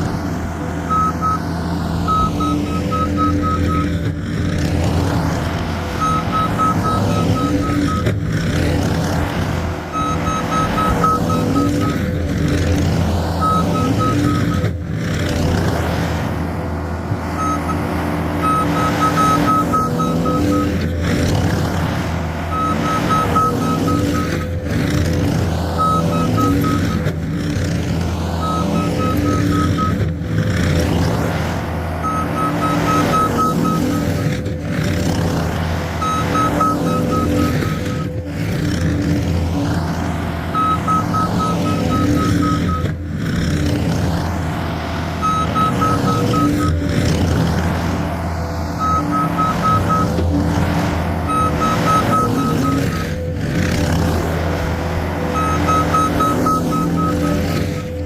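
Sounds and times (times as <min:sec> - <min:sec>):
diesel engine running: 0:00.0 - 0:58.0
backup alarm beeping: 0:00.9 - 0:04.1, 0:06.0 - 0:08.2, 0:09.9 - 0:12.2, 0:13.4 - 0:14.7, 0:17.3 - 0:21.0, 0:22.5 - 0:24.7, 0:25.8 - 0:27.1, 0:28.4 - 0:30.2, 0:31.7 - 0:34.4, 0:36.0 - 0:38.2, 0:40.5 - 0:43.1, 0:45.2 - 0:47.0, 0:48.7 - 0:53.4, 0:55.1 - 0:58.0.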